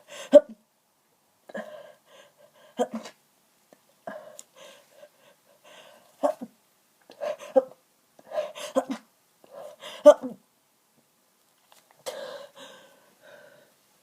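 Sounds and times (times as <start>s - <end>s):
gasping in-breaths: 12.0s - 13.8s.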